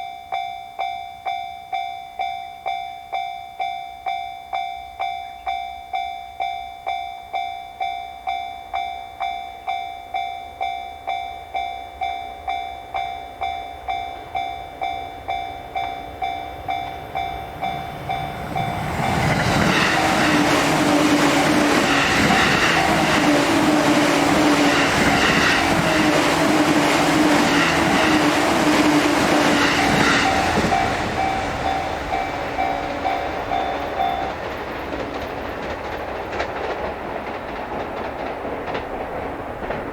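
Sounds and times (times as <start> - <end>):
level-crossing warning bell: 0.0 - 36.0
train wheels clattering: 14.1 - 39.9.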